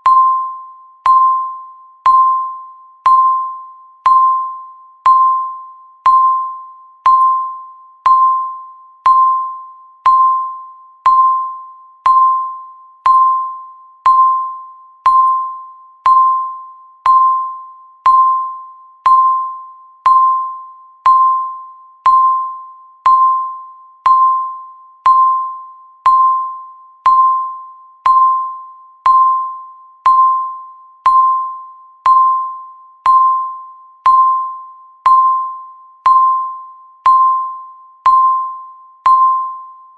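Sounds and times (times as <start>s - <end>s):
timer beeping: 0.0s - 39.9s.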